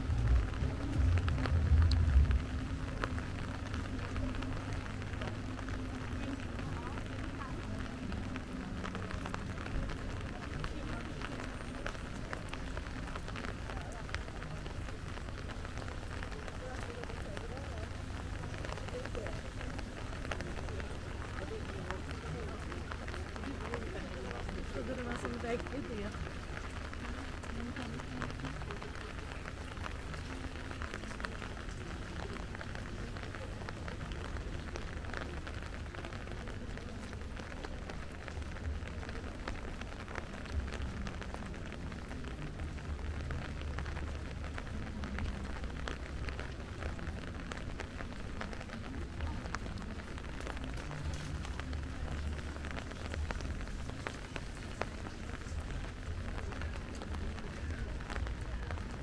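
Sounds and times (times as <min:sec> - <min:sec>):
low steady rumble: 0:00.0 - 0:08.3
steady rain falling: 0:00.0 - 0:59.0.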